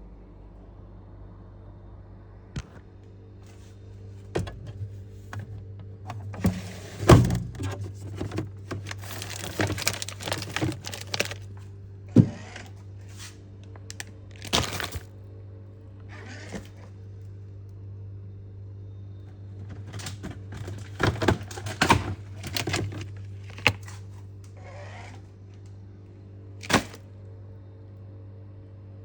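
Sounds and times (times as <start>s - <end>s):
steady low hum: 0.0s - 29.0s
knocks and clicks of handling: 4.3s - 11.5s.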